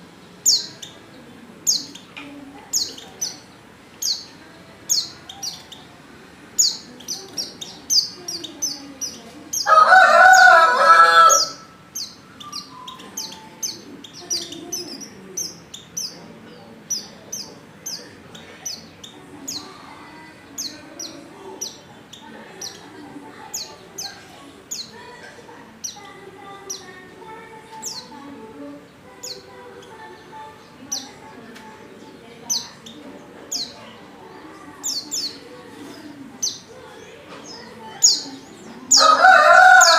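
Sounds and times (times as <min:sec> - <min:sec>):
rooster crowing: 0:09.6 - 0:11.8, 0:38.9 - 0:39.9.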